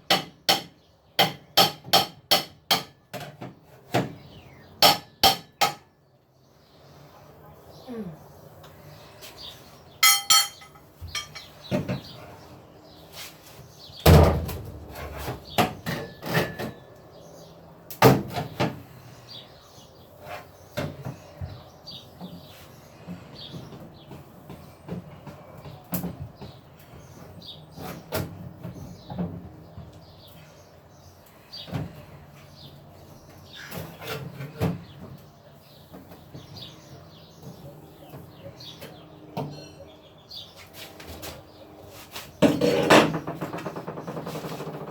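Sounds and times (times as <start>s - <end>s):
hammering on metal panels: 0.0s - 6.0s, 14.0s - 16.9s
ringing metal clink: 10.0s - 11.5s.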